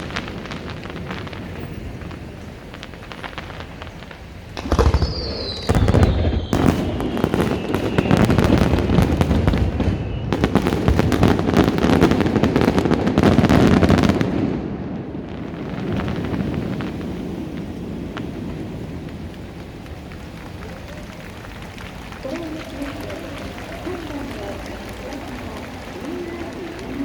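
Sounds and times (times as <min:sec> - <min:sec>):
firework bangs: 0:00.0 - 0:27.0
fireworks crackling: 0:00.0 - 0:27.0
firework whistle falling in pitch: 0:04.6 - 0:10.9.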